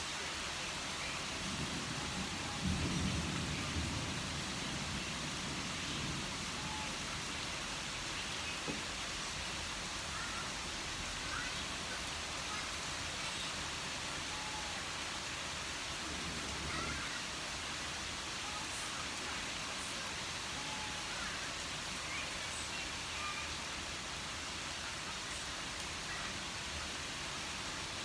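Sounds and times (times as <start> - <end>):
steady rain falling: 0.0 - 28.0.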